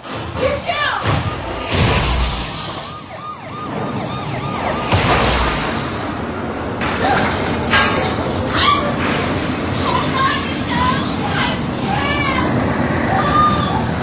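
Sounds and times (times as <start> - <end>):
siren-like warble: 1.0 - 6.5
loud gusts or crashes: 1.0 - 10.7
rushing wind noise: 3.7 - 14.0.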